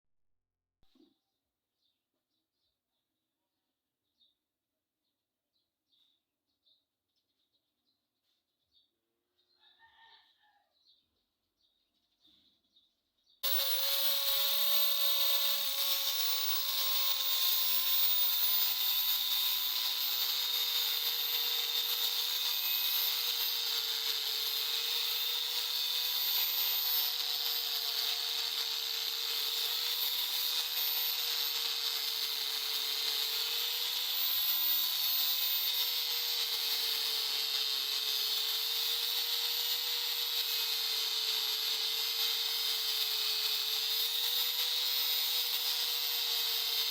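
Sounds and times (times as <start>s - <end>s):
power grinder on steel: 13.4s - 46.9s.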